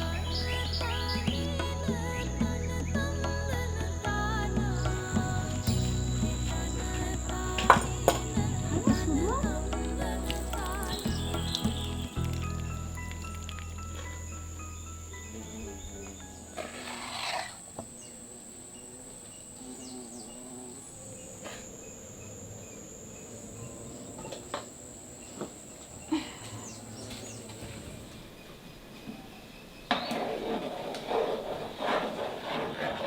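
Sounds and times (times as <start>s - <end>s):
high-pitched insect drone: 0.0s - 26.0s
rough scraping sound: 16.5s - 17.7s, 30.1s - 33.0s.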